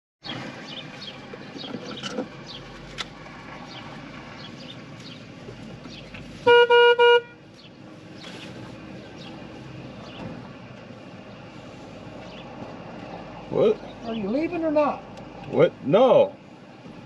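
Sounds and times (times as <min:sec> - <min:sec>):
car horn honking: 0:06.4 - 0:07.4.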